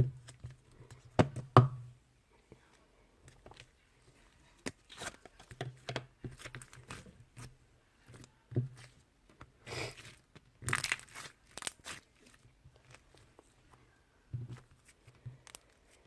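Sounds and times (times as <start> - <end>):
slime crackling and tearing: 9.9 - 13.1.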